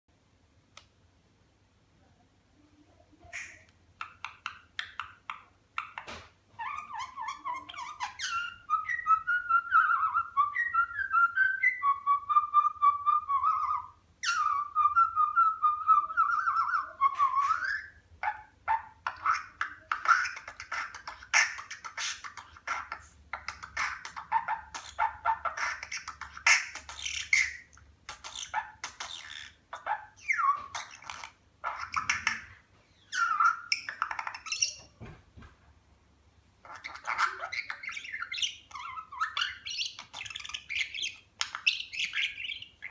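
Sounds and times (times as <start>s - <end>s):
budgerigar clicking and warbling: 3.3s - 9.3s, 16.6s - 35.0s, 36.6s - 42.9s.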